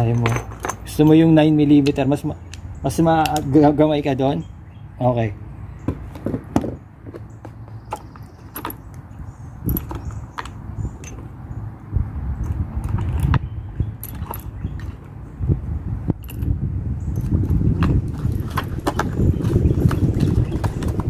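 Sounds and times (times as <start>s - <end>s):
low rumbling handling noise: 0.0s - 4.5s, 5.6s - 21.0s
metallic clicks and rattles of gear: 9.6s - 11.3s, 12.4s - 15.1s, 16.1s - 19.6s.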